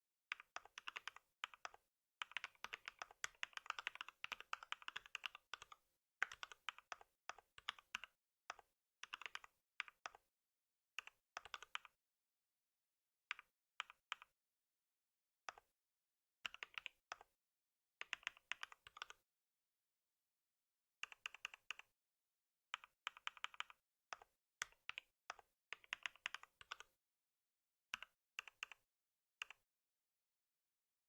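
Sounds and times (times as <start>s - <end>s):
computer keyboard typing: 0.3s - 10.2s, 22.8s - 25.1s.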